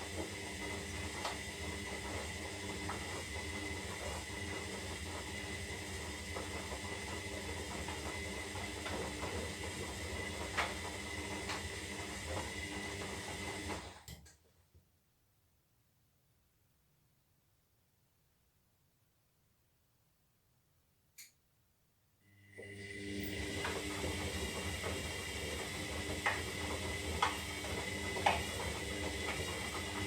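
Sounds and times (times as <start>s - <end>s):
washing machine running: 0.0s - 14.1s, 22.4s - 30.0s.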